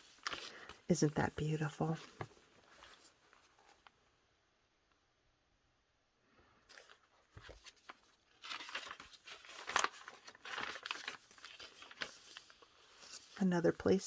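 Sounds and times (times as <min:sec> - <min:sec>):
paper pages rustling: 0:00.0 - 0:04.0, 0:06.6 - 0:14.0.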